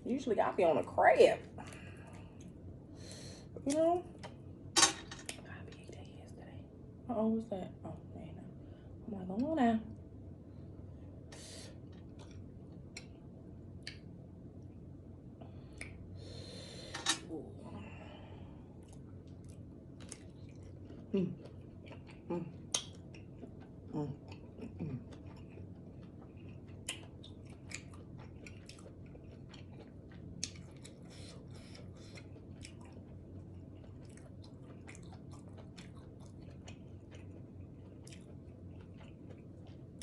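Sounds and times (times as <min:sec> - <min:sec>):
wet chewing and smacking: 0:11.8 - 0:14.8, 0:18.8 - 0:40.0.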